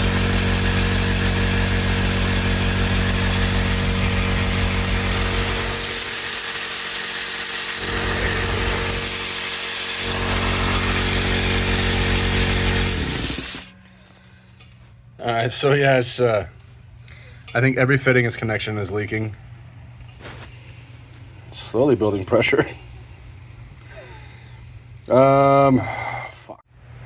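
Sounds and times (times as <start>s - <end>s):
electric air compressor running: 0.0s - 13.8s.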